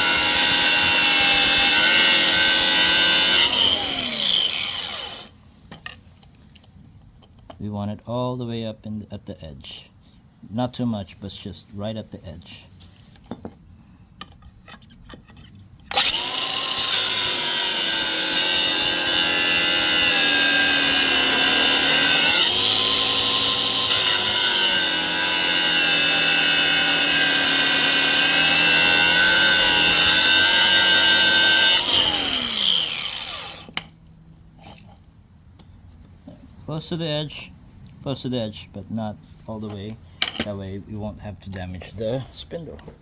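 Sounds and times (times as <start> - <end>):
power cutting tool whining: 0.0 - 5.3, 15.9 - 33.9.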